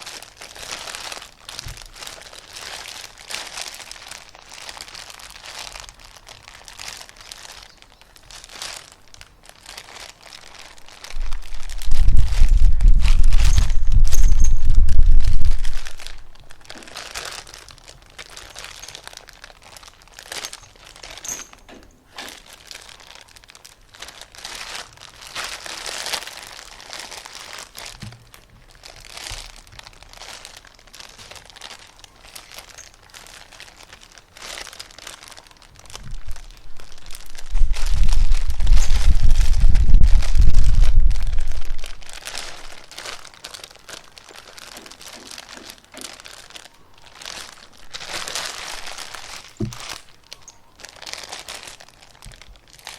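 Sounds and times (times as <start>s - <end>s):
crinkly material crumpling: 0.0s - 52.9s
loud low rumble: 11.2s - 16.5s.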